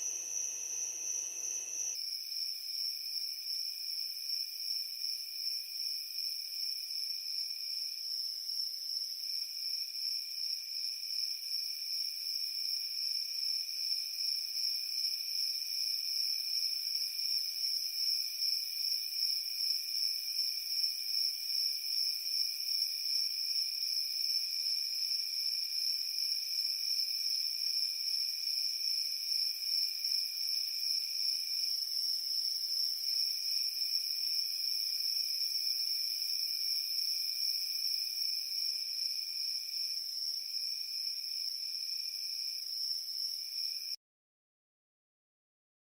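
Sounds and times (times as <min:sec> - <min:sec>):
high pulsing cricket trill: 0:00.0 - 0:02.0
lower cricket trill: 0:00.0 - 0:02.0.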